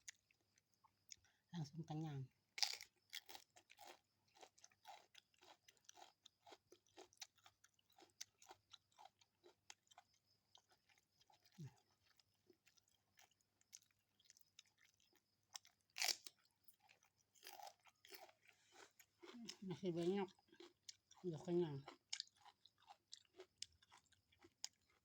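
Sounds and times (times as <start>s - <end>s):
chewing and crunching food: 0.0s - 25.0s.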